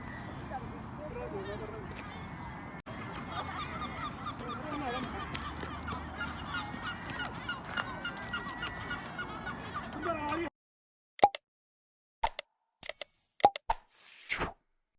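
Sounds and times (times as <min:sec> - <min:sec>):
waterbirds honking: 0:01.3 - 0:10.5.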